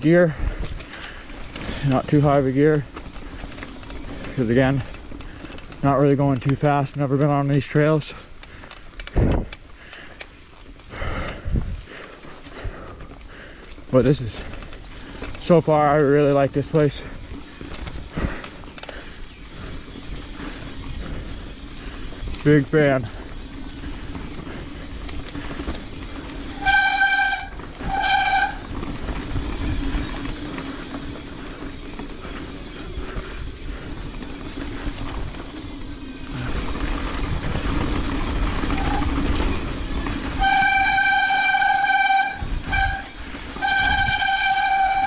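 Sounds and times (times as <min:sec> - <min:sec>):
train horn blasts: 0:26.5 - 0:28.8, 0:40.3 - 0:45.0.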